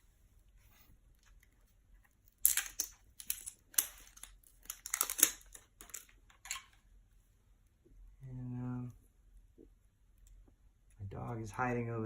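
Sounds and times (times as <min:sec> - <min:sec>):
plastic crinkling: 0:02.4 - 0:06.7.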